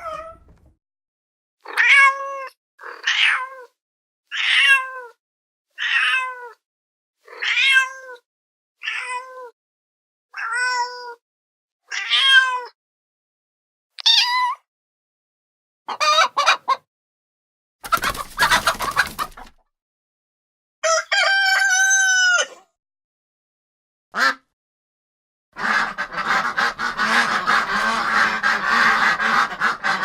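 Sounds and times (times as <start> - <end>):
cat meows: 1.6 - 5.2, 5.8 - 6.6, 7.2 - 8.2, 8.8 - 9.5, 10.3 - 11.2, 11.9 - 12.8, 14.0 - 14.6
chicken clucks: 15.9 - 16.9, 17.8 - 19.6, 25.6 - 30.0
rooster crow: 20.8 - 22.6.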